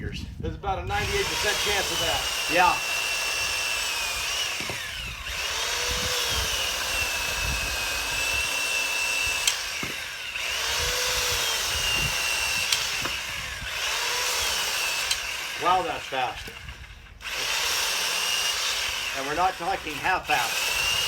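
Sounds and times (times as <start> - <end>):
electric chainsaw motor whine: 0.9 - 21.0
sharp clicks: 9.4 - 10.0, 15.0 - 15.3.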